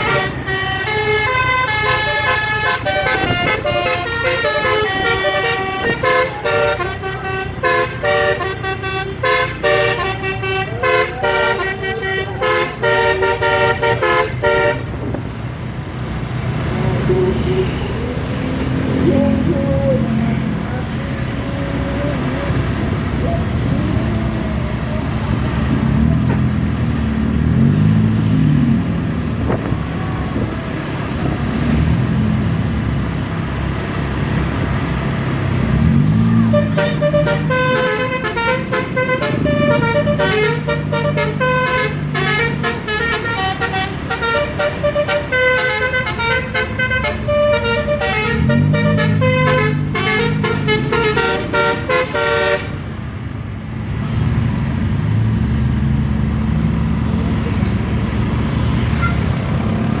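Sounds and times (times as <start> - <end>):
bus horn playing melody: 0.0 - 15.2, 16.6 - 26.6, 35.8 - 53.0, 58.6 - 59.7
bus engine revving: 0.0 - 60.0.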